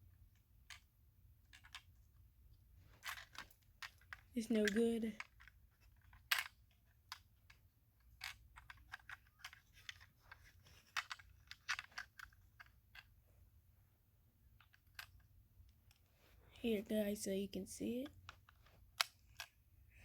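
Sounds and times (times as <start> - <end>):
small toy parts clicking: 0.6 - 1.9, 3.0 - 13.1, 14.6 - 15.3.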